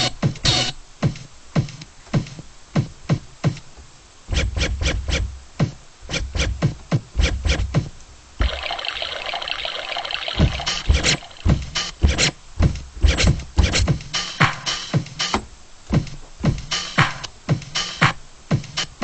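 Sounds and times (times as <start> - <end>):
steady hiss: 0.0 - 19.0
deep kick drum thumps: 4.3 - 8.5, 10.4 - 18.8.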